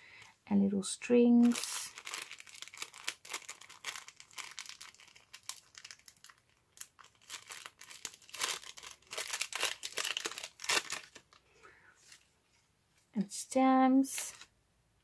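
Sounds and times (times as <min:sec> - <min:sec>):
paper and packaging rustling: 0:01.4 - 0:11.4, 0:14.1 - 0:14.5.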